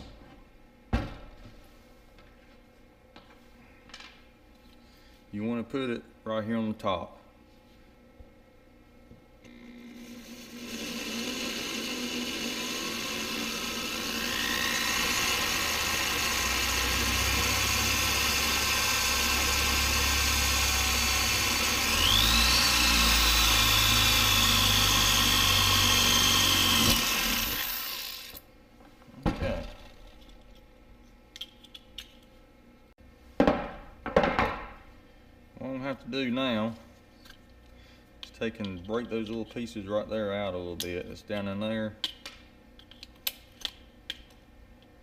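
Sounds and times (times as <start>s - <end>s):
power drill whining: 9.5s - 28.4s.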